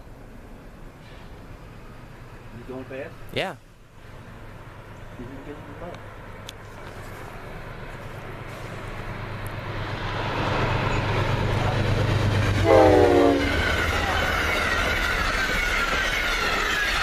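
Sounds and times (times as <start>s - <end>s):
train passing: 0.0s - 17.0s
train horn blast: 12.6s - 13.8s.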